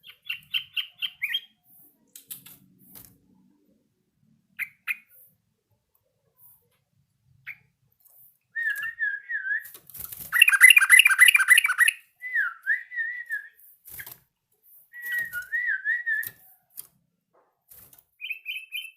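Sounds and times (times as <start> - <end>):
faint clicks: 1.8 - 3.3, 15.1 - 17.0
bird singing whistled phrases: 8.6 - 9.7, 10.3 - 13.6, 14.9 - 16.4, 18.2 - 18.9
rapid chattering bird notes: 10.3 - 12.0.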